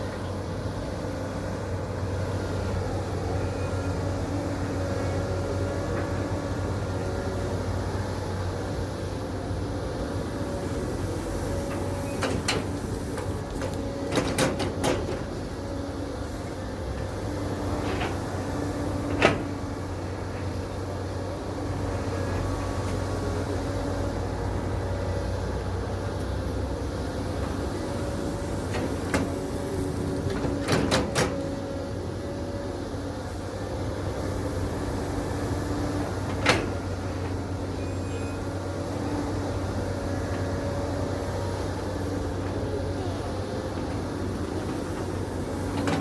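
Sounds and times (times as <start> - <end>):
excavator diesel engine running: 0.0 - 46.0.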